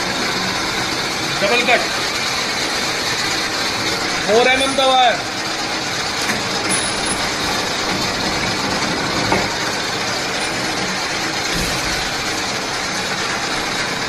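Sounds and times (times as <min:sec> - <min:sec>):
wire stripping machine running: 0:00.0 - 0:14.0.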